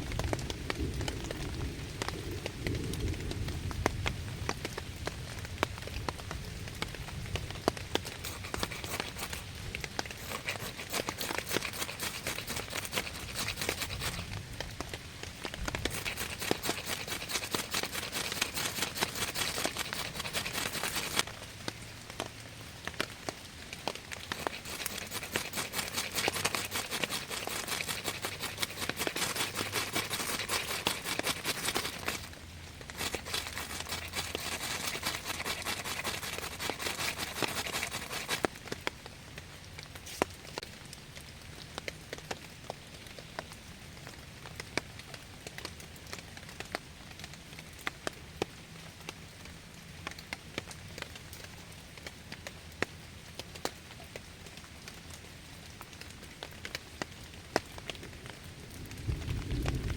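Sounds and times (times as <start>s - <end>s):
crackling and rustling: 0.0s - 40.8s
rain pattering: 0.0s - 59.9s.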